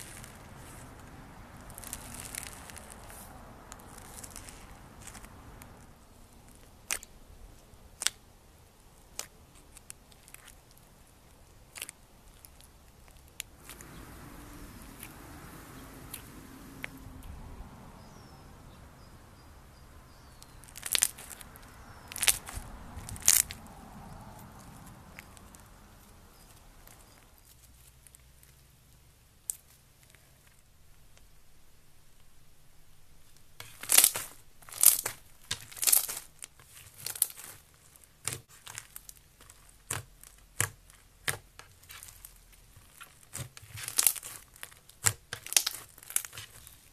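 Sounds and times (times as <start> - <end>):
crunchy slime crackling: 0.0 - 17.4, 20.1 - 28.7, 33.4 - 46.9
slime popping: 20.6 - 23.6, 33.6 - 46.7.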